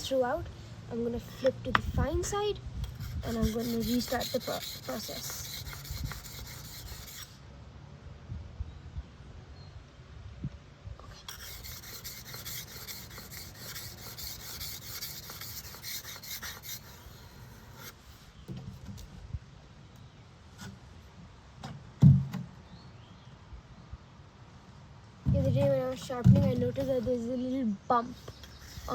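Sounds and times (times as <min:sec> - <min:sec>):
blade scraping on sharpening stone: 0:02.9 - 0:07.4, 0:11.2 - 0:18.0
dull thump: 0:21.6 - 0:22.6.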